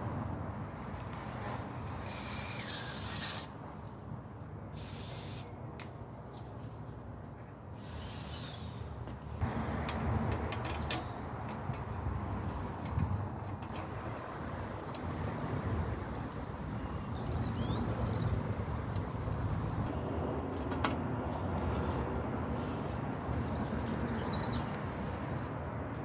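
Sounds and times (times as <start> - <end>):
spray paint can hissing: 1.8 - 3.5, 4.8 - 5.5, 7.8 - 8.6.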